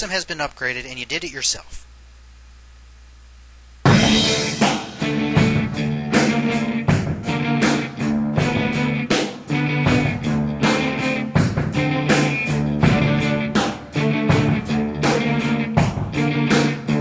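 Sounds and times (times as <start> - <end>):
faint low hum: 0.0 - 3.9
guitar rock music with drums: 3.8 - 17.0.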